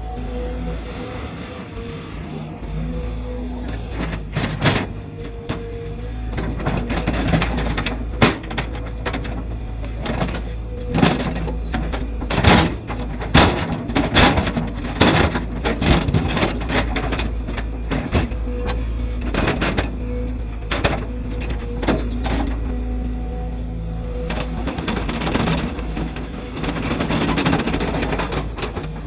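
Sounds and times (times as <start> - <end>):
diesel engine drone: 0.0 - 29.0
excavator bucket clanking: 0.0 - 29.0.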